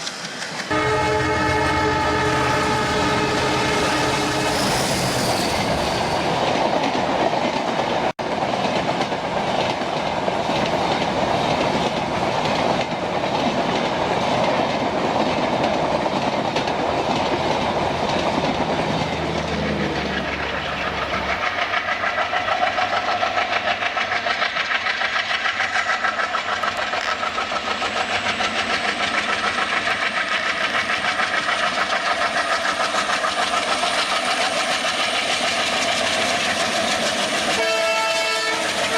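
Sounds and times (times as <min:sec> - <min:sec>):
train wheels clattering on track: 0:00.0 - 0:38.9
steady ringing tone: 0:00.7 - 0:06.4.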